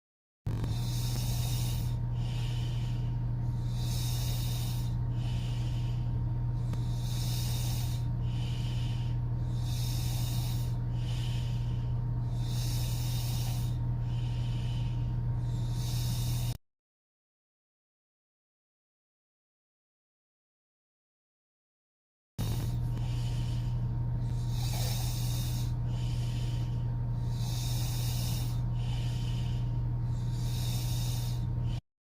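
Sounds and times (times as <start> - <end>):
steady low hum: 0.5 - 16.6, 22.4 - 31.8
woman snoring: 0.5 - 16.6, 22.4 - 31.8.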